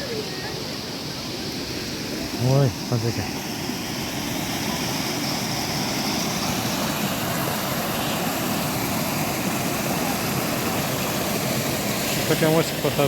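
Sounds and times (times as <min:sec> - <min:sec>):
rushing stream and waterfall: 0:00.0 - 0:13.0.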